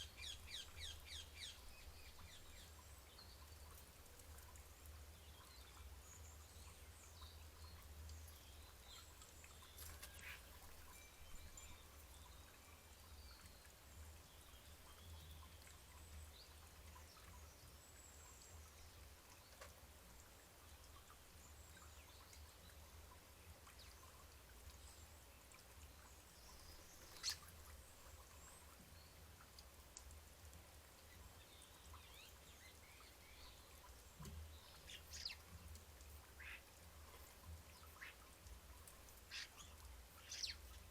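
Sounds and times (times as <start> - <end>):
faint bird chirps: 26.5 - 27.6, 36.4 - 36.6.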